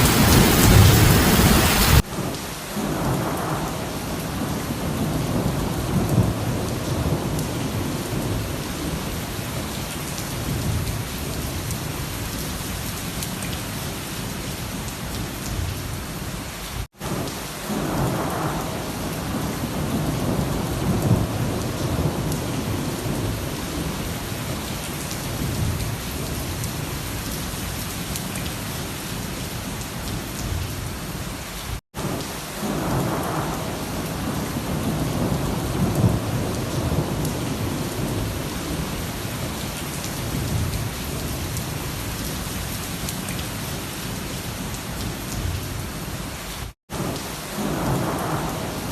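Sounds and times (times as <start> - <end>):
thunder rumbling: 0.0 - 9.2, 32.1 - 39.4, 46.9 - 48.9
rain falling: 0.0 - 48.9.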